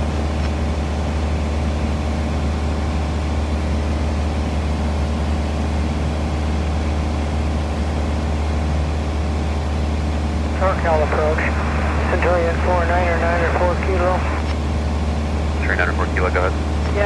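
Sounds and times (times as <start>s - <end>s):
small airplane engine droning: 9.2s - 17.0s.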